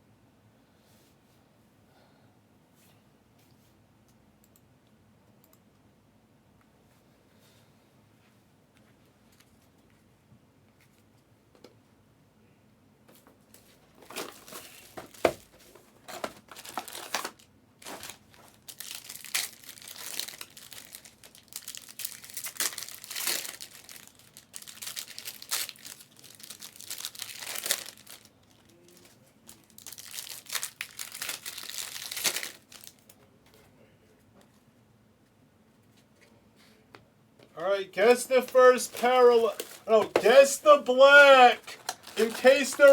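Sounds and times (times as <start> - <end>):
wrappers crinkling and tearing: 14.0 - 33.2, 38.0 - 42.9.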